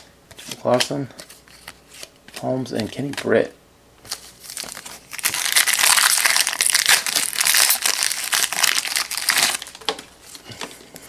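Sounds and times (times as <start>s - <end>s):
plastic wrapper crinkling: 4.1s - 9.9s.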